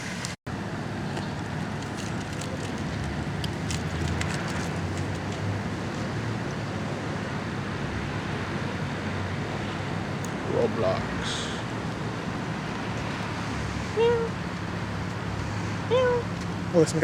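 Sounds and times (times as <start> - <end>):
car engine idling: 9.9 - 17.0.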